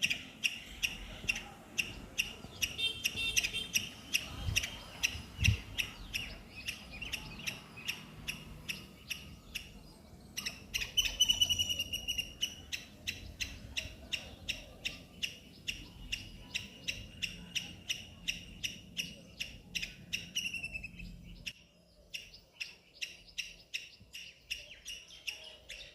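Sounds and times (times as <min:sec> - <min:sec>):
squirrel squeaking: 0:00.0 - 0:25.9.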